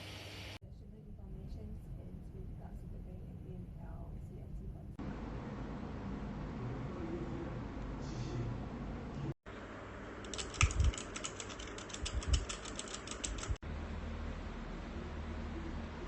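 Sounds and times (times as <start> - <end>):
mechanical keyboard typing: 10.2 - 13.6.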